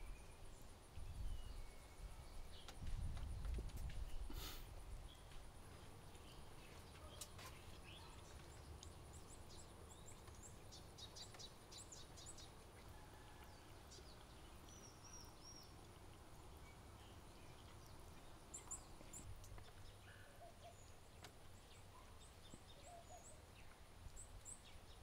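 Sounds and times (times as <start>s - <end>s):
bird chirps: 6.2s - 12.6s, 13.9s - 25.0s.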